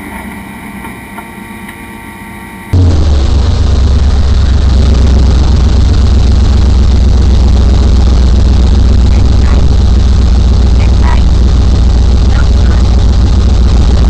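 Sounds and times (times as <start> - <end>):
race vehicle engine rumbling: 0.0 - 14.0.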